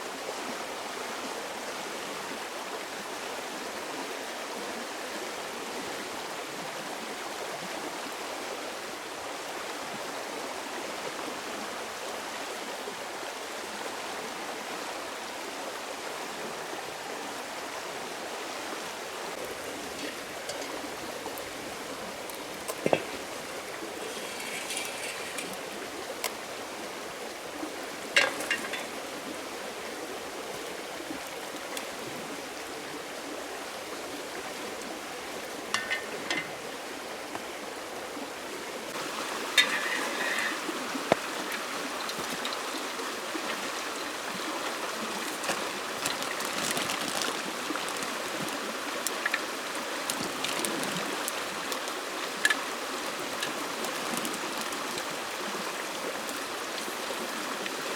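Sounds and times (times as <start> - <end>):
running water: 0.0 - 57.9
scraping rustle: 19.4 - 25.8, 38.9 - 43.0, 45.0 - 51.8.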